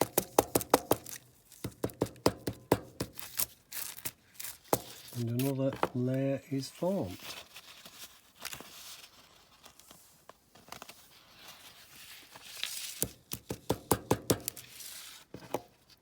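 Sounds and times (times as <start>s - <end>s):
rustling: 3.0s - 13.4s, 14.4s - 16.0s.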